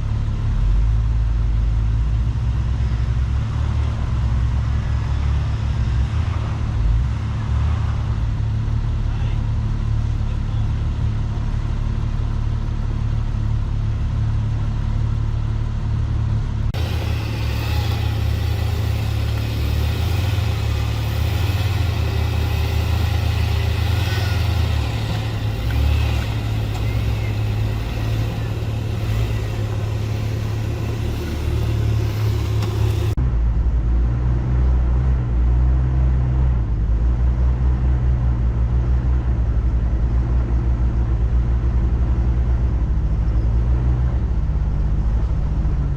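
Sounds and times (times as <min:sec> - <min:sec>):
vehicle engine running at low revs: 0:00.0 - 0:45.9.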